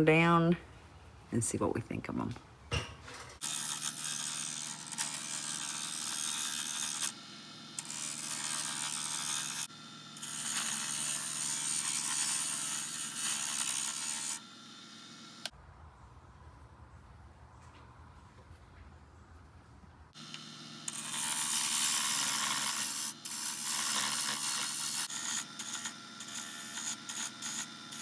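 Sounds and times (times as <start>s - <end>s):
lathe humming: 3.4s - 15.5s, 20.2s - 28.0s
turning tool scraping wood: 3.4s - 15.5s, 20.2s - 28.0s.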